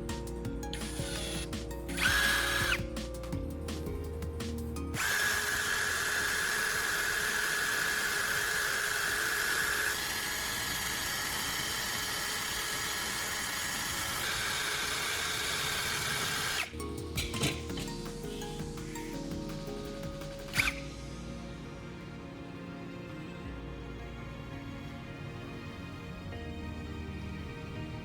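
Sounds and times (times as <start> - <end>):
background music: 0.0 - 7.7, 16.6 - 28.0
small power tool whining: 0.8 - 2.8, 5.0 - 16.8.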